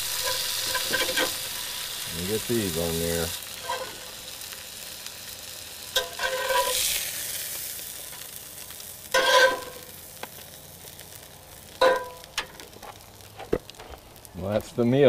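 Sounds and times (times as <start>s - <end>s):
fish sizzling in a skillet: 0.0s - 14.6s
metal utensil scraping a pan: 0.2s - 1.4s, 3.6s - 4.1s, 6.0s - 6.9s, 9.1s - 9.8s.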